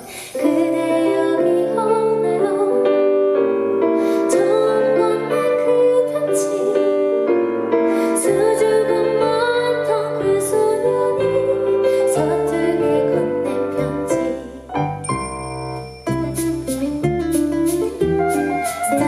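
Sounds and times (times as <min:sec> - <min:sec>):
woman singing: 0:00.0 - 0:03.4, 0:04.1 - 0:07.4, 0:08.0 - 0:14.8, 0:18.8 - 0:19.0
piano accompaniment: 0:00.0 - 0:19.0.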